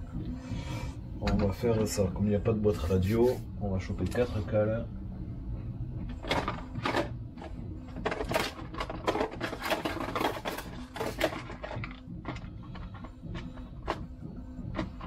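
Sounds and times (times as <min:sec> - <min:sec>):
hardware parts rattling: 0:06.2 - 0:14.0.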